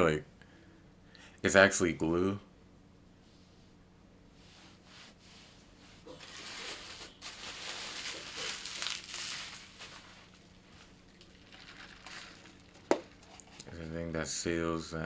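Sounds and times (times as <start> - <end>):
packaging crinkling and rustling: 6.0 - 13.9.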